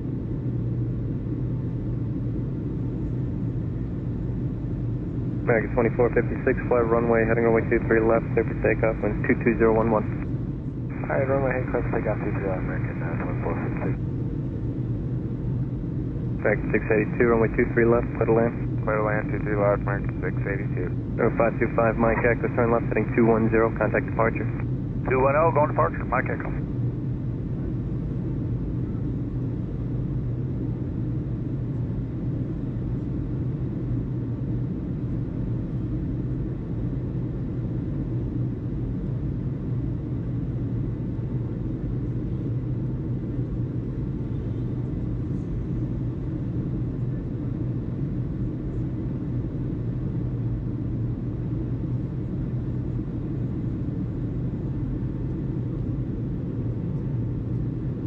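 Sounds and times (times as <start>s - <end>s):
low rumble with hum: 0.0s - 58.0s.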